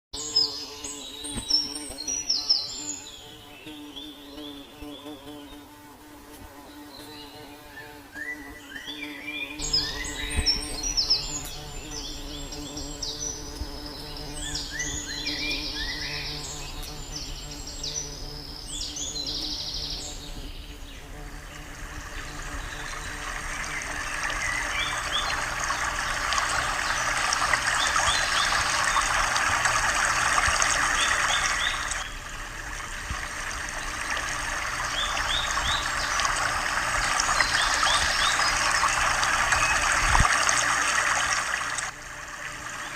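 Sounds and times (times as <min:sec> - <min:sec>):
birds chirping: 0:00.2 - 0:05.8, 0:06.5 - 0:40.2
dense steady hiss: 0:08.0 - 0:42.9.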